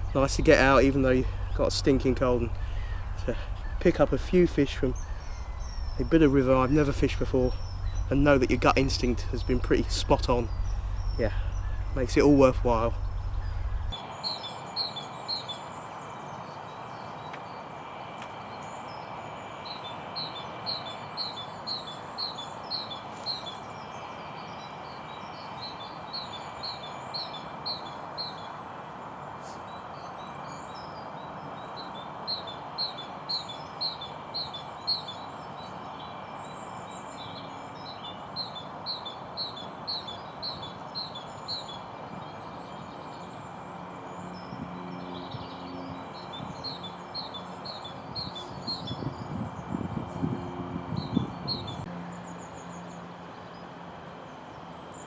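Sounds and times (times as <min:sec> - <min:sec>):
songbird singing: 0:00.0 - 0:55.0.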